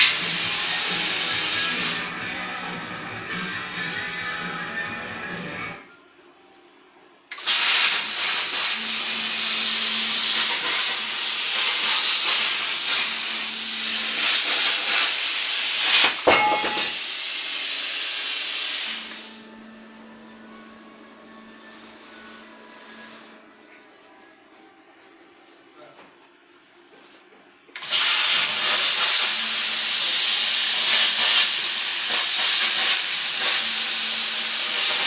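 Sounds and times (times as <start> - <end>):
plasma cutter torch hissing: 0.0 - 2.2, 7.3 - 19.5, 27.8 - 35.0.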